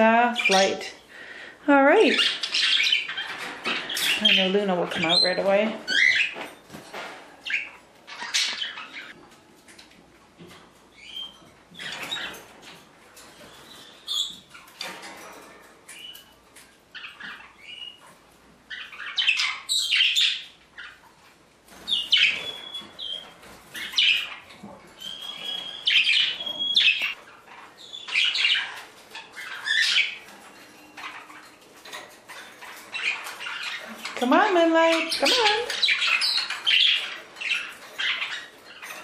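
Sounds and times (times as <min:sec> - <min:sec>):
budgies chirping and squawking: 0:00.0 - 0:09.2, 0:09.8 - 0:39.0.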